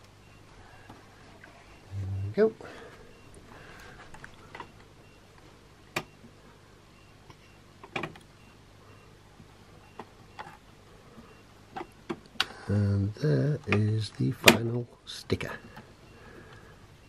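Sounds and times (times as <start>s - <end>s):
faint low hum: 0.0s - 17.0s.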